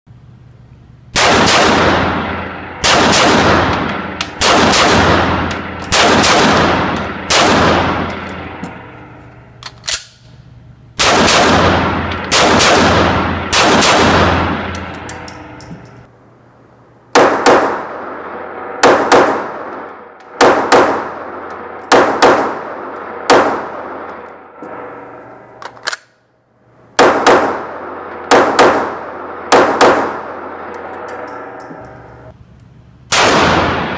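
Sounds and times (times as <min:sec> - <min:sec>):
pistol shots echoing: 0:01.2 - 0:08.6, 0:11.0 - 0:15.6, 0:17.1 - 0:24.2, 0:27.0 - 0:32.0, 0:33.1 - 0:33.9.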